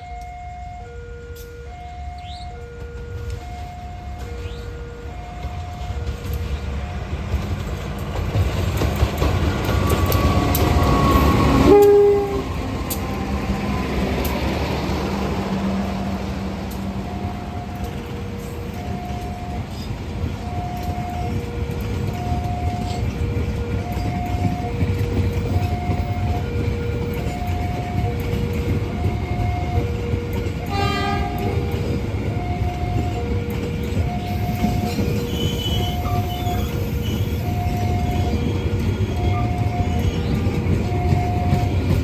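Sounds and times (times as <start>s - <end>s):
two-tone crossing alarm: 0.0s - 8.2s, 8.8s - 42.0s
train passing rumble: 0.0s - 42.0s
train horn: 9.8s - 14.6s, 20.5s - 41.8s.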